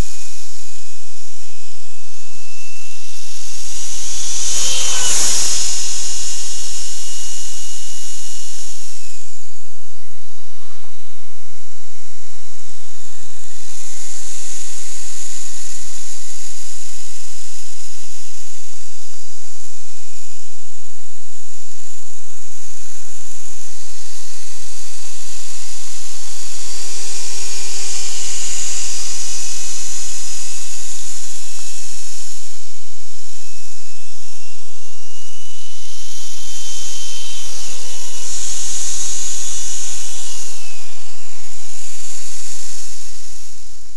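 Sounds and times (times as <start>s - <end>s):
thin fan whine: 0.0s - 19.2s, 23.9s - 43.9s
rc jet fan hissing rush: 2.5s - 9.3s, 35.4s - 43.5s.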